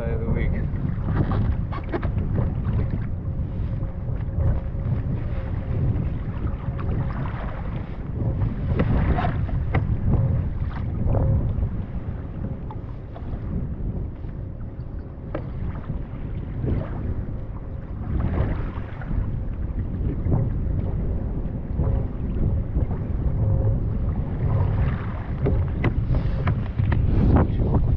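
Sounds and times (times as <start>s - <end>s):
water against hull: 0.0s - 27.9s
wind buffeting microphone: 0.0s - 27.9s
short knocks: 24.6s - 27.1s.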